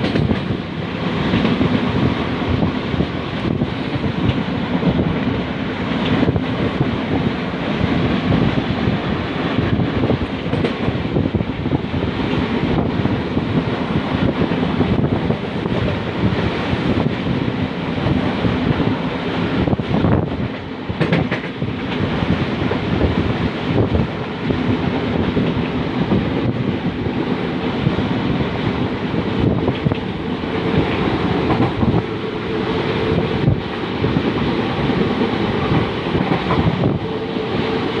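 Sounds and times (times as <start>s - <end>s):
loud rushing rumble: 27.7s - 38.0s.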